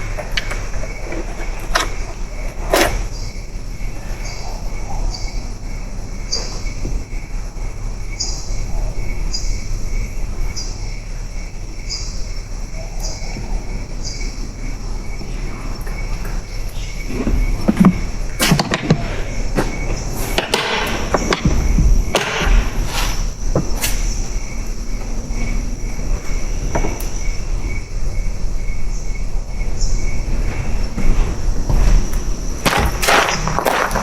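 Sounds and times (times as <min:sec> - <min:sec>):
high insect trill: 0:00.0 - 0:34.0
insects chirping: 0:00.0 - 0:34.0
close rustles and knocks: 0:15.2 - 0:34.0.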